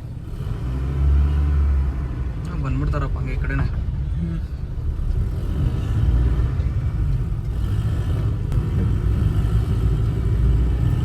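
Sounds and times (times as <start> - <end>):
car engine and road rumble: 0.0 - 11.0.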